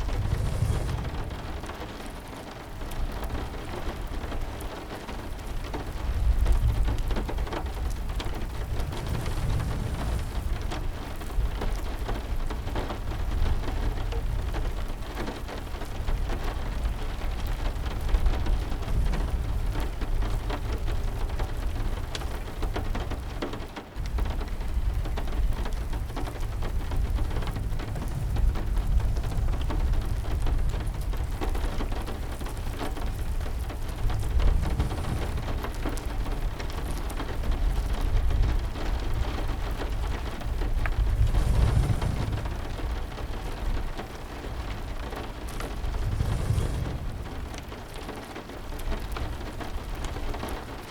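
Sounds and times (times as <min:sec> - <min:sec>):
low rumble: 0:00.0 - 0:02.2, 0:06.6 - 0:12.2, 0:24.1 - 0:49.5
heavy rain: 0:00.0 - 0:50.9.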